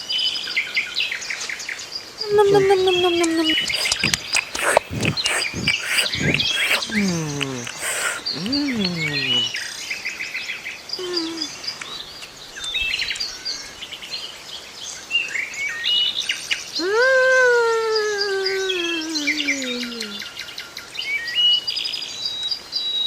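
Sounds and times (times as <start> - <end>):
birds chirping: 2.2 - 9.6.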